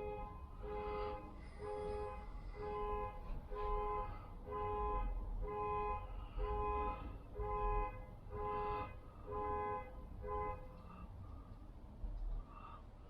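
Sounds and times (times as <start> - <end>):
two-tone car alarm beeping: 0.0 - 9.6.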